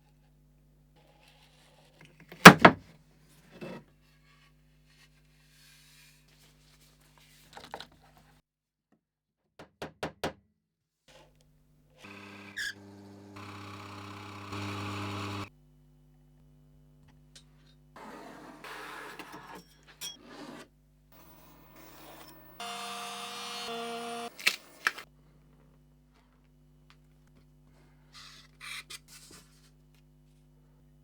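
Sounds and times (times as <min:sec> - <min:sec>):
wood and tools knocking: 0:02.5 - 0:02.8
motor hum: 0:12.1 - 0:15.5, 0:21.2 - 0:25.1.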